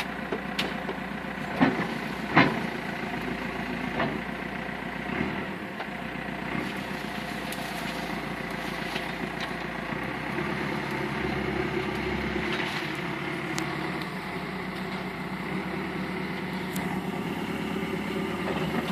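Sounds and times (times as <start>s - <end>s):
backhoe engine running: 0.0s - 18.9s.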